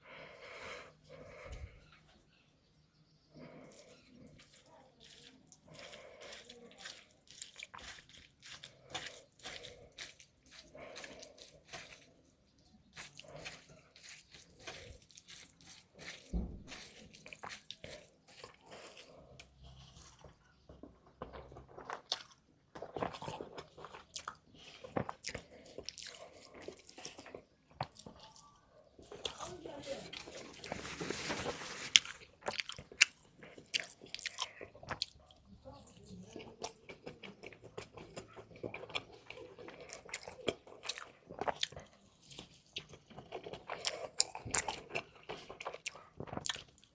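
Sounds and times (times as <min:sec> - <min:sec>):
chewing crunchy food: 0:00.0 - 0:02.4, 0:03.0 - 0:46.9
dull low bump: 0:16.3 - 0:16.7.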